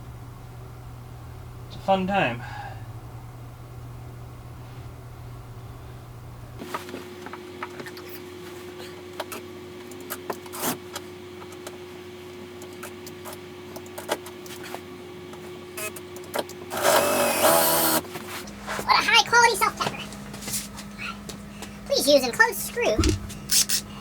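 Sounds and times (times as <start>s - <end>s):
faint steady hum: 0.0s - 24.0s.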